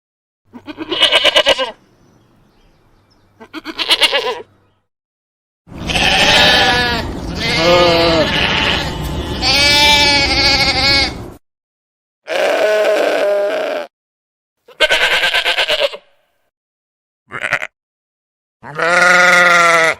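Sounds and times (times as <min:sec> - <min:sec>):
sheep bleating: 0:00.5 - 0:01.8, 0:03.4 - 0:04.5, 0:05.8 - 0:11.2, 0:12.3 - 0:13.9, 0:14.6 - 0:16.2, 0:17.3 - 0:17.8, 0:18.6 - 0:19.9.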